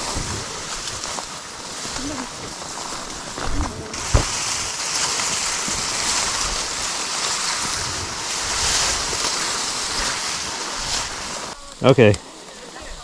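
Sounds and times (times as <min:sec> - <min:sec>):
wind buffeting microphone: 0:00.0 - 0:04.8.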